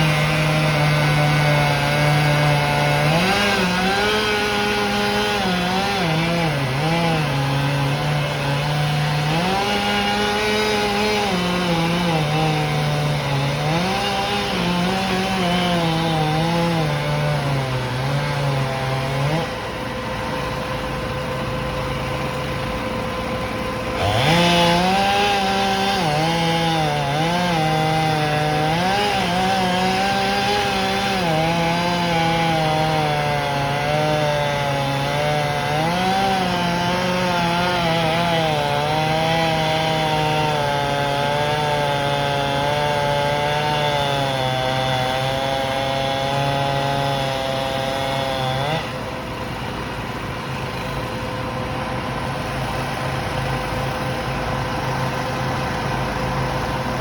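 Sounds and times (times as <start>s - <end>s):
chainsaw cutting wood: 0.0s - 57.0s
low steady engine: 14.2s - 42.7s, 44.2s - 57.0s.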